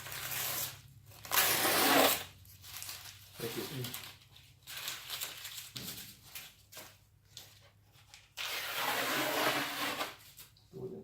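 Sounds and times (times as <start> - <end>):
masking tape ripping off: 0.0 - 3.9, 8.4 - 10.2
crinkling rustles: 2.5 - 8.4.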